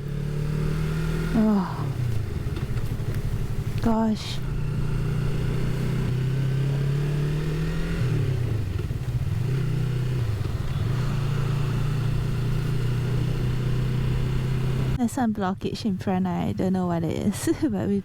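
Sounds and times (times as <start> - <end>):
motorcycle engine idling: 0.0 - 7.0, 7.9 - 15.0.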